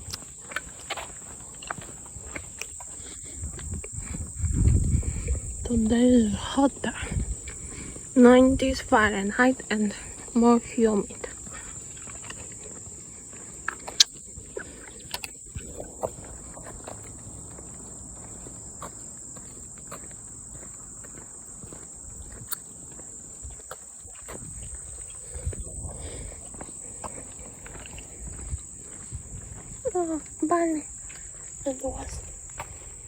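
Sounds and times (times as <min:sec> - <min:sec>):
insects droning: 0:00.0 - 0:33.0.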